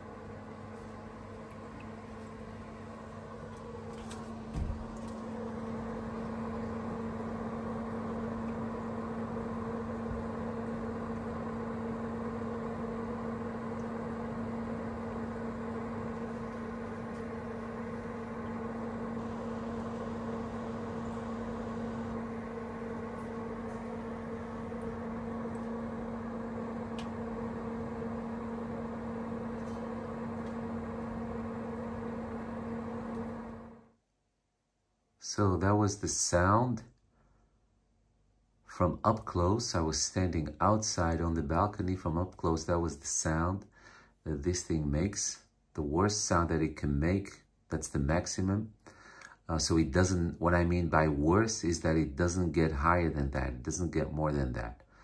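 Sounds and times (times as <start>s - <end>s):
fan air rushing: 0.0s - 33.9s
air conditioner hum: 0.0s - 55.0s.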